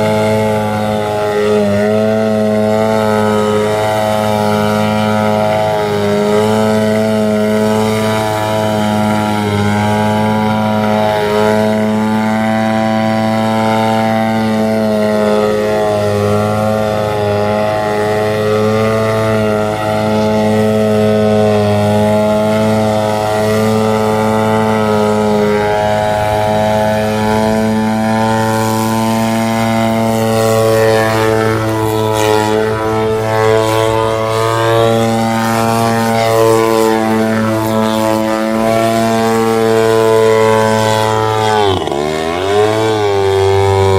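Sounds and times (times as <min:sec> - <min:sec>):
model plane engine running: 0:00.0 - 0:43.9.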